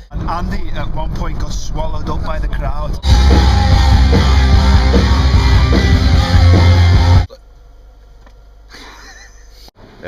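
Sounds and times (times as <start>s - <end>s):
loud rock music: 3.0s - 7.3s.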